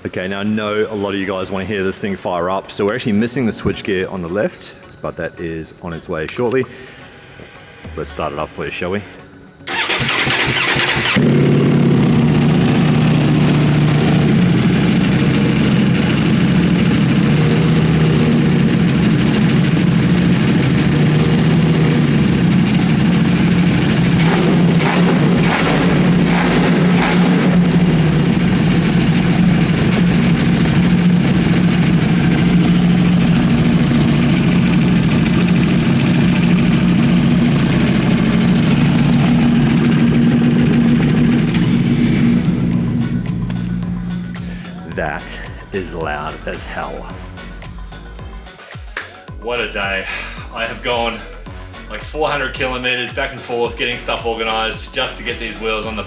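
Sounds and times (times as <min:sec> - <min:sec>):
motorcycle engine starting and idling: 0:09.6 - 0:47.1, 0:53.8 - 0:56.0.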